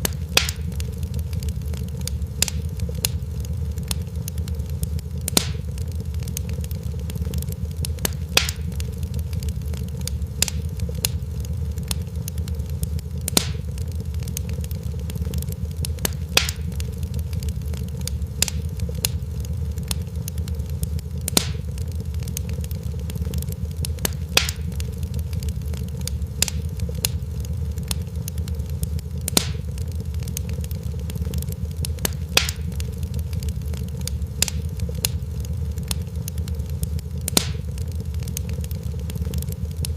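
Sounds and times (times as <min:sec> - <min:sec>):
fireplace fire crackling: 0:00.0 - 0:39.9.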